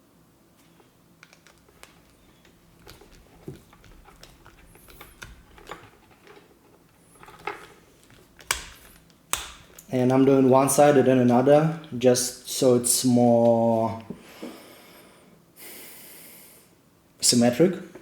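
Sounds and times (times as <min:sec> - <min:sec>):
plug parts clicking: 0:01.2 - 0:06.5, 0:07.1 - 0:12.0.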